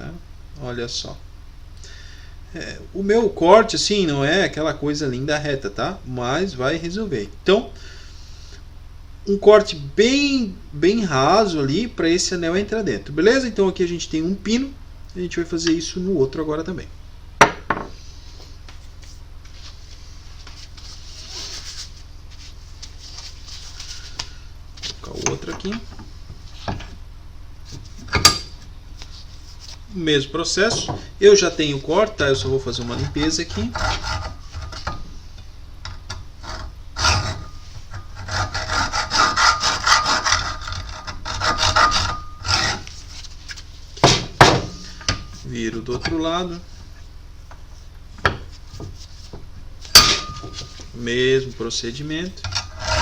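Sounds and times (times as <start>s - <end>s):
steady low hum: 0.0s - 53.0s
scraping and rubbing strokes: 19.0s - 25.1s, 36.4s - 44.0s.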